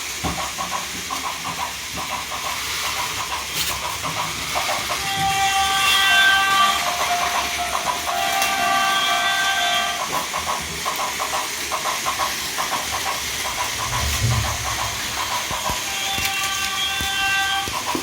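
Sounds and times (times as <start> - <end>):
toy trains whirring on track: 0.0 - 18.0
electronic train horn: 5.0 - 10.2, 15.8 - 17.8.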